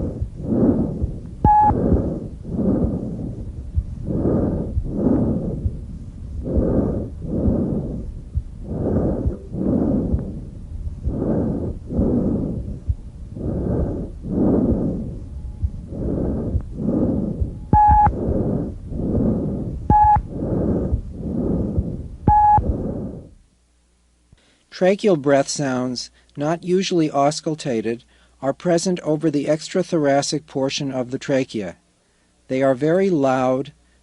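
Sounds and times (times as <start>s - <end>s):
harsh hollow breathing: 0.0s - 23.4s
short beeps: 1.5s - 1.8s, 17.7s - 18.1s, 19.9s - 20.2s, 22.3s - 22.6s.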